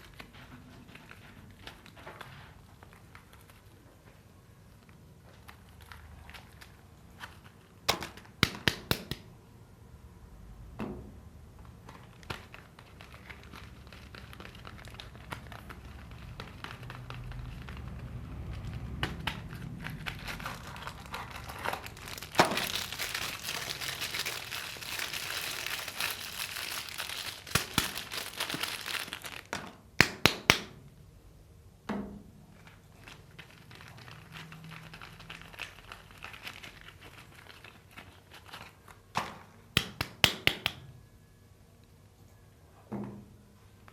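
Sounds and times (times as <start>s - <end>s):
wrapper crinkling and tearing: 4.7s - 8.4s, 11.9s - 29.8s, 32.6s - 39.0s
sharp wrapper snaps: 20.1s - 30.7s, 39.8s - 40.9s.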